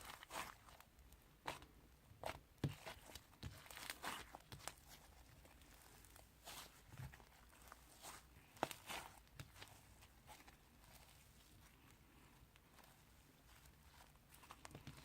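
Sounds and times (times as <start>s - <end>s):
slime squished by hand: 1.4s - 11.6s.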